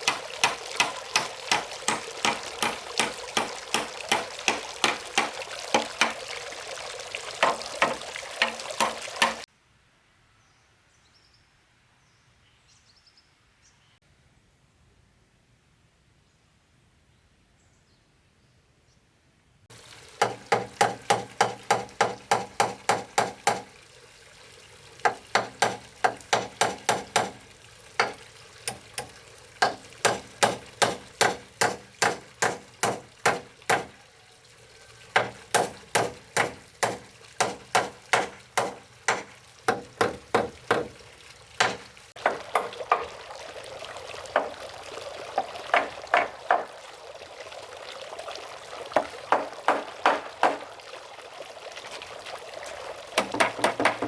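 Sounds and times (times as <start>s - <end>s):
hammer driving nails into wood: 0.0s - 6.2s, 20.2s - 23.7s, 25.0s - 27.4s, 28.0s - 33.9s, 35.2s - 41.0s, 41.6s - 42.7s, 53.2s - 54.0s.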